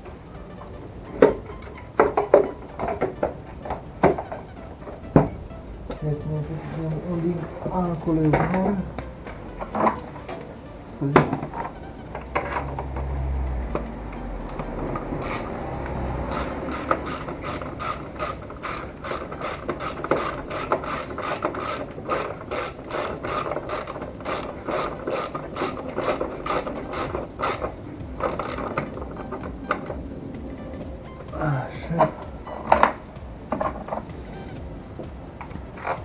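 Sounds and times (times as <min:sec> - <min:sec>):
ratchet wrench clicking: 0:11.4 - 0:31.3, 0:32.1 - 0:36.0.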